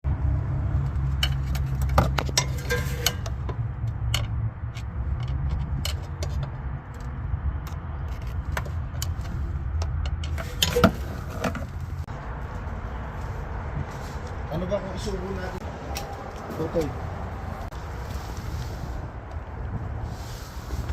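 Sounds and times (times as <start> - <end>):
low vehicle rumble: 0.0 - 20.9
suspension squeaking and knocking: 0.8 - 12.1.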